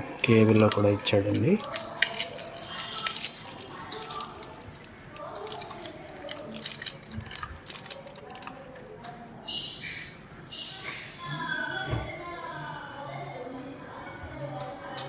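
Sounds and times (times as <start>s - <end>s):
clicks taps and rustles: 0.1s - 9.2s.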